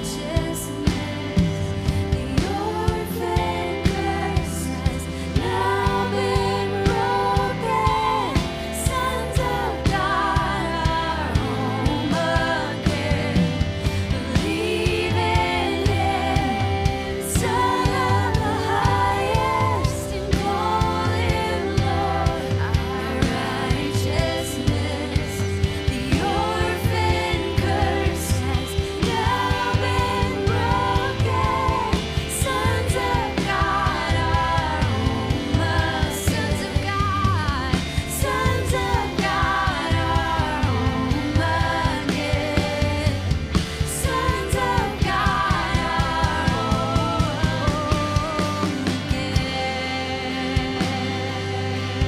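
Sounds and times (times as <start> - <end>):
band with bass and drums: 0.0 - 52.0
woman singing: 0.0 - 52.0.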